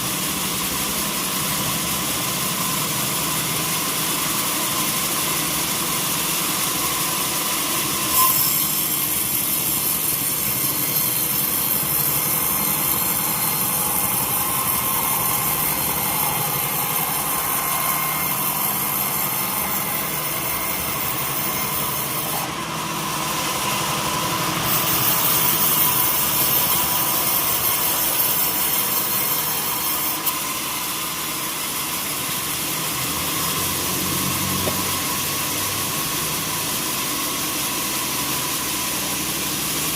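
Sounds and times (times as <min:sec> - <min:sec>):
sawmill machine hum: 0:00.0 - 0:39.9
saw cutting log hiss: 0:08.0 - 0:22.6, 0:24.6 - 0:30.8.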